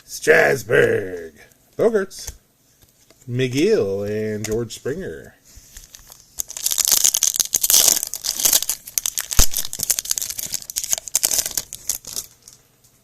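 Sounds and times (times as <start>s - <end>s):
foil wrapper tearing and crinkling: 5.8s - 12.6s.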